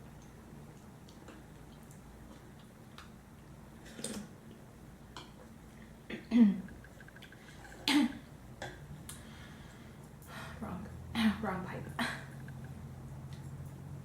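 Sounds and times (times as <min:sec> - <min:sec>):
woman coughing: 0:07.9 - 0:08.2.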